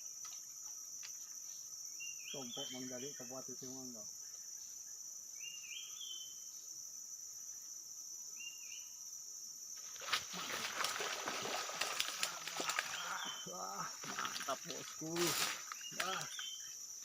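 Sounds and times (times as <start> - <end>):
forest insects droning: 0.0 - 17.0
loud rustling or splashing: 9.8 - 13.3.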